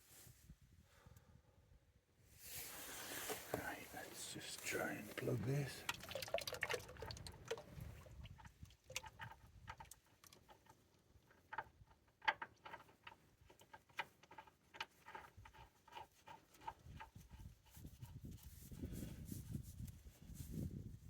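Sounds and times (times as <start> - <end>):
oil dripping into a tub: 5.1 - 16.7.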